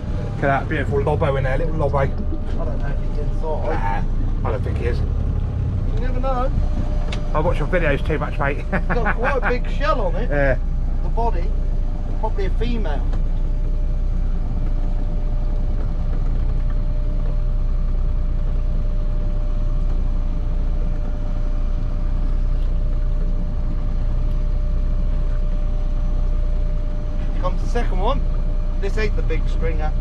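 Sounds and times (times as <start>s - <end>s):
boat engine droning: 0.0s - 30.0s
faint engine whine: 0.0s - 30.0s.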